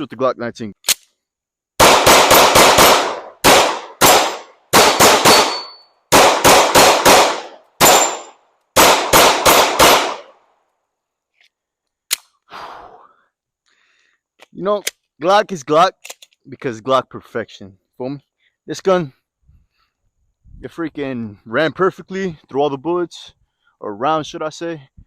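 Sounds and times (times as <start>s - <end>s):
pistol click: 0.8s - 1.2s, 11.9s - 12.4s
pistol shots echoing: 1.8s - 10.4s.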